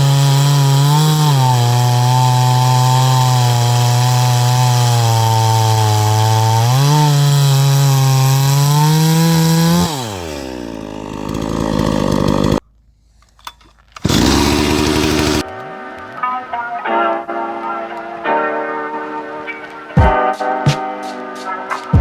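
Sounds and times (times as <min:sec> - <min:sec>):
chainsaw running at full throttle: 0:00.0 - 0:12.6, 0:14.0 - 0:15.4.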